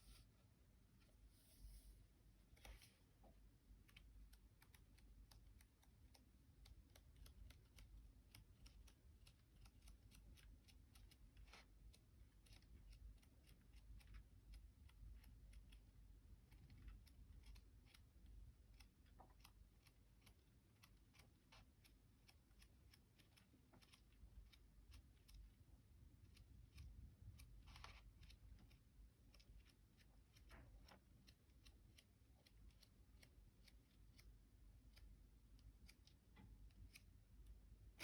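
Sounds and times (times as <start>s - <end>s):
paper pages flipping: 2.6s - 3.0s.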